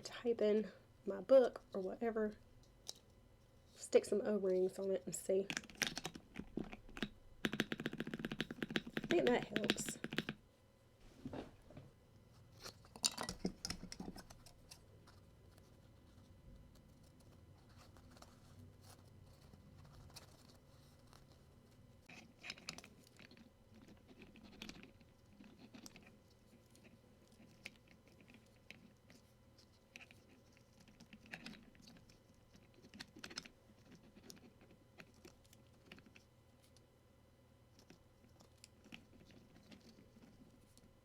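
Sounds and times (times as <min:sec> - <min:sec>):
plastic keyboard parts clicking: 0:05.5 - 0:10.4.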